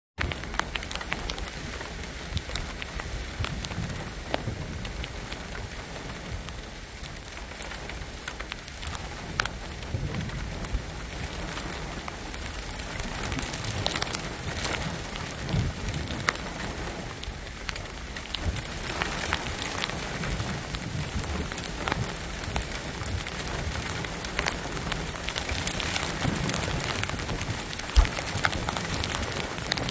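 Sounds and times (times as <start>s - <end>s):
raindrops tapping a surface: 0.2s - 29.9s
steady rain falling: 0.2s - 29.9s.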